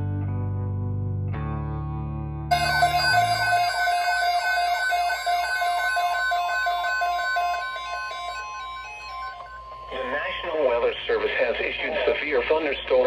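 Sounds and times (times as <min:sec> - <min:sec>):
pulsing electronic beeps: 0:02.5 - 0:12.1
steady high alarm tone: 0:02.5 - 0:12.7.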